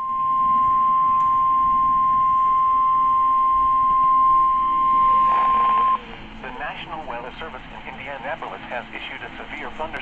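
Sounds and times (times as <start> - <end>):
steady high alarm tone: 0.0 - 6.1.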